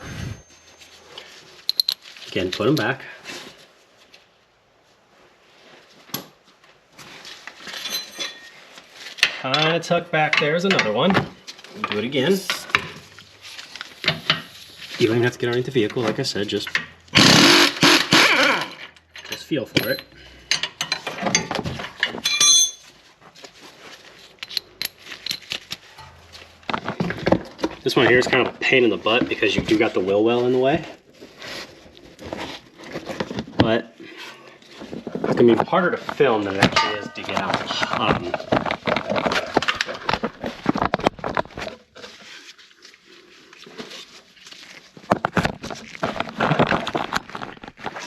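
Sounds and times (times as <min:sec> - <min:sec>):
metal tools clinking: 0:01.6 - 0:02.1, 0:07.7 - 0:08.6, 0:19.0 - 0:23.0, 0:24.4 - 0:26.5, 0:36.6 - 0:37.8
hand tools clicking on metal: 0:01.7 - 0:02.0.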